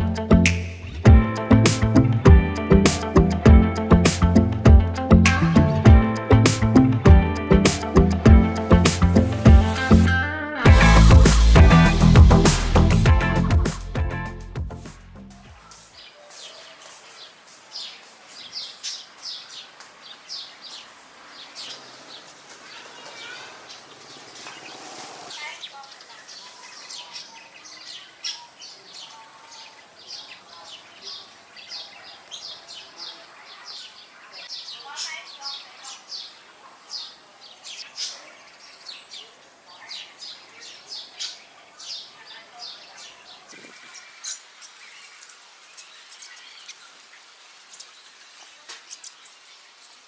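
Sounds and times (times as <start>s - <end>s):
sharp click: 0.5s - 0.9s
songbirds chirping: 15.2s - 50.0s.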